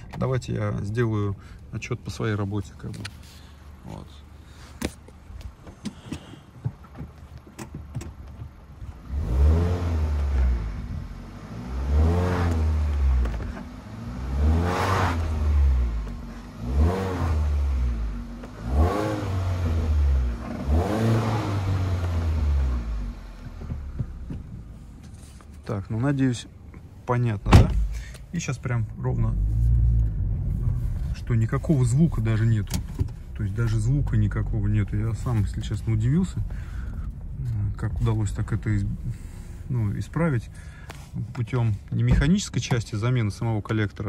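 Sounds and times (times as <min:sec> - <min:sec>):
car engine idling: 0:00.0 - 0:43.6
car engine revving in short blips: 0:09.0 - 0:24.5.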